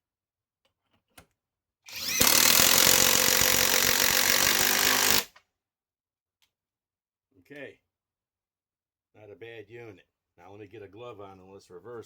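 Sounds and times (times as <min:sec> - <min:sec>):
impact wrench hammering: 0:02.0 - 0:05.3.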